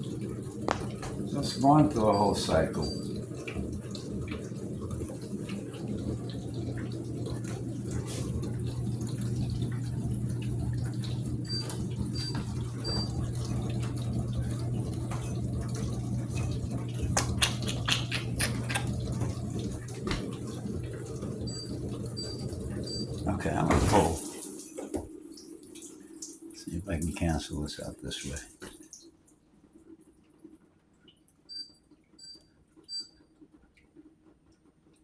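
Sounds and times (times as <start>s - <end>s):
dishwasher motor hum: 0.0s - 30.6s, 31.4s - 35.0s.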